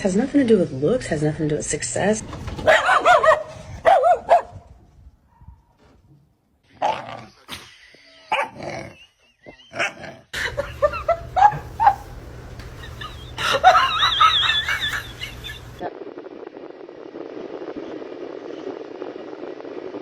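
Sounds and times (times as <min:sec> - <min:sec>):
dog barking: 0:02.6 - 0:04.6, 0:11.1 - 0:12.1
dog yipping: 0:02.6 - 0:04.6, 0:11.1 - 0:12.1
steady low hum: 0:10.4 - 0:20.0.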